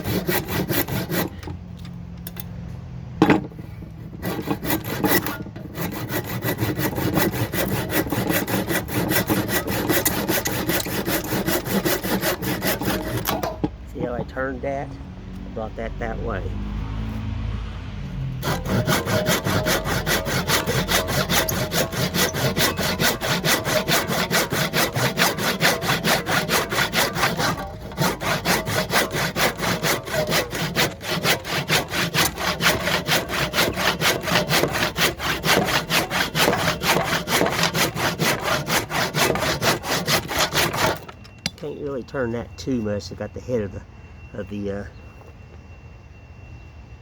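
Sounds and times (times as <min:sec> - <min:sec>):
handsaw cutting wood: 0:00.0 - 0:01.5, 0:04.0 - 0:14.4, 0:18.4 - 0:41.2.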